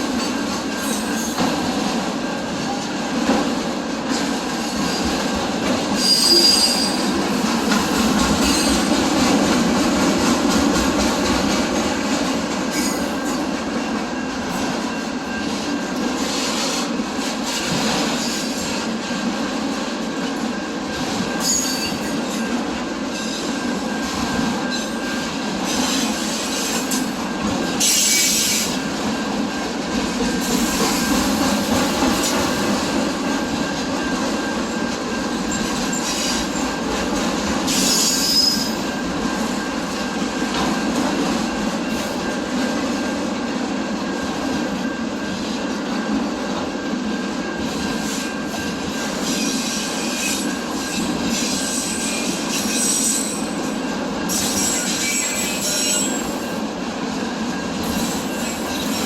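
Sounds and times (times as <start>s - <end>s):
train wheels on rails: 0.0s - 59.0s
high-pitched wheel squeals: 6.0s - 7.1s, 21.4s - 22.2s, 37.7s - 39.0s, 54.3s - 56.5s.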